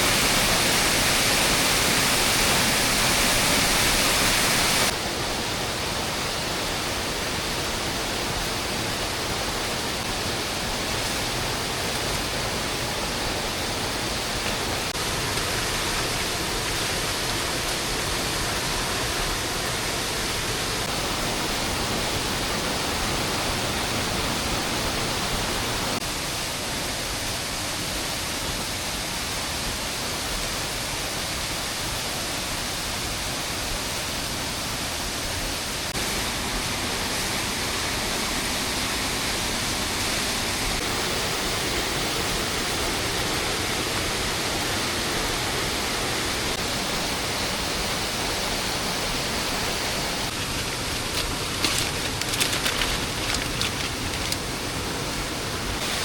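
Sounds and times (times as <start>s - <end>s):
heavy rain falling: 0.0s - 27.9s, 35.9s - 56.0s.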